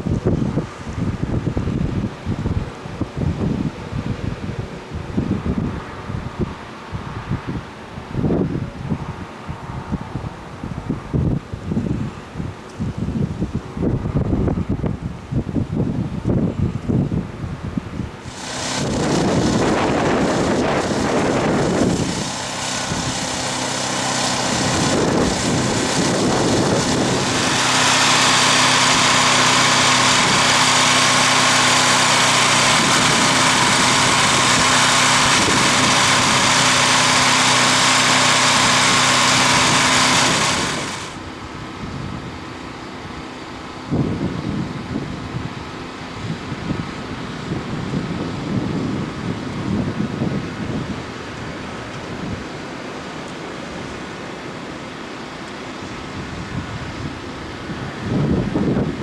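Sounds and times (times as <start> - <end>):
wind on microphone: 0.0 - 42.4, 43.9 - 52.5, 56.2 - 59.0
loud hiss: 18.2 - 41.2
motor running: 18.2 - 41.4.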